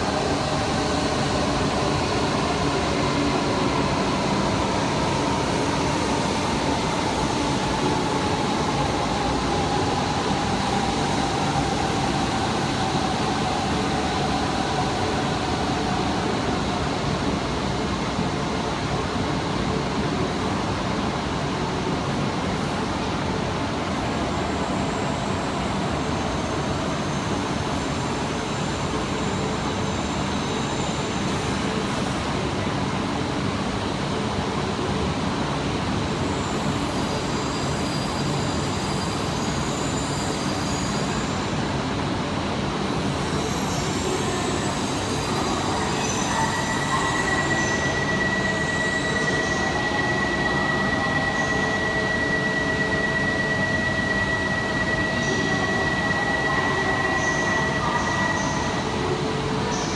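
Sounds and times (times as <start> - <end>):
train rumbling past: 0.0 - 59.9.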